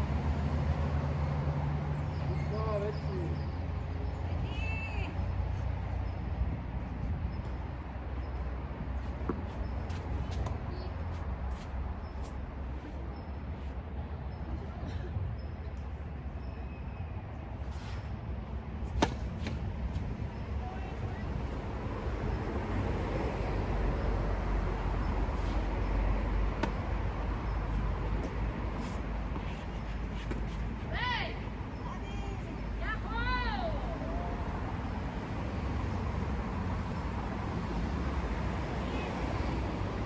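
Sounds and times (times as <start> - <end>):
low outdoor rumble: 3.3 - 35.1
tennis balls being struck: 18.9 - 19.9, 25.5 - 30.5.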